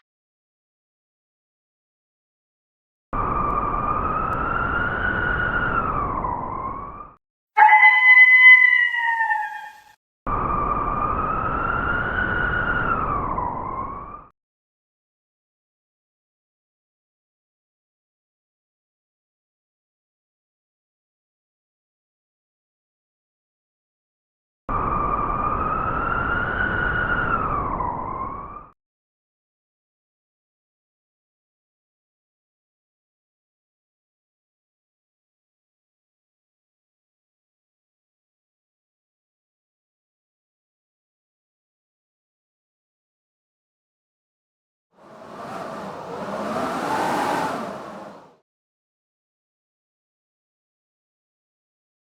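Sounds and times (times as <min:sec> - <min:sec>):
storm wind howling: 0:45.0 - 0:48.4.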